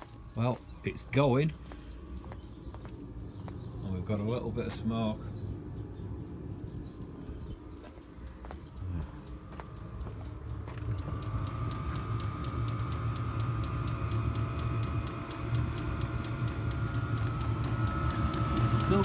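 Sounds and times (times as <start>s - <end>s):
burner low hum: 0.0s - 19.0s
blower fan whine: 5.0s - 19.0s
fuel pump ticking: 8.0s - 19.0s.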